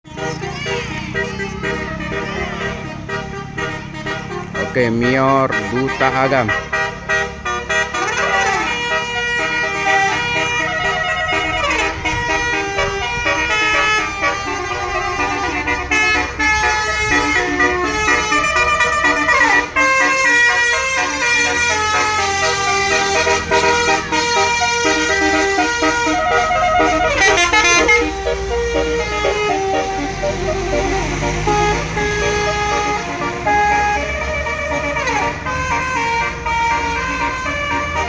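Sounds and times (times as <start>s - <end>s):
multi-tone bus horn tune: 0.0s - 38.0s
falling siren-like sweep: 21.7s - 38.0s.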